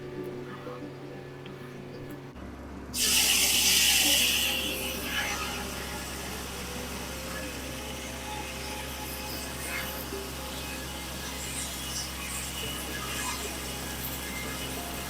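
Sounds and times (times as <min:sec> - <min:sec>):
sawmill running: 0:00.0 - 0:15.0
rush of machine noise: 0:03.0 - 0:15.0.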